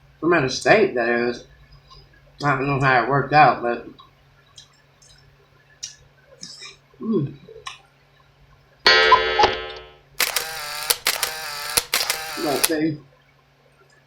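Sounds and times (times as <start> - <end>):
loud pitched tones: 8.9 - 10.1
low hum: 8.9 - 10.3.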